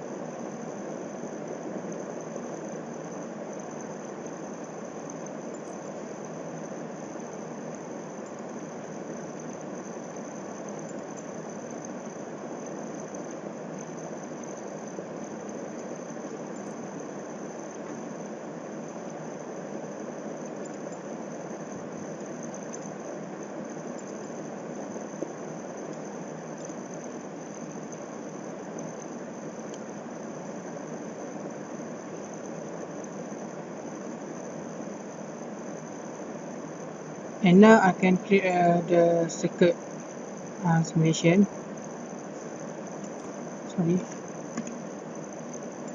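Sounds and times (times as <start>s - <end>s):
low hum and hiss: 0.0s - 45.9s
high-pitched whine: 37.4s - 39.8s, 40.4s - 41.9s.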